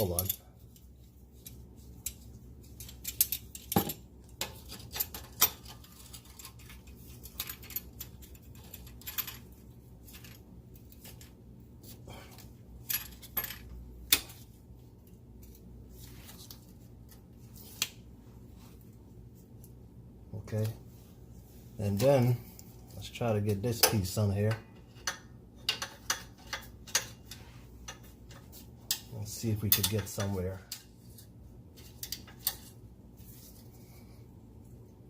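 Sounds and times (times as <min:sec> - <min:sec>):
faint low hum: 0:00.0 - 0:35.0
metal tools clinking and knocking: 0:01.4 - 0:10.4.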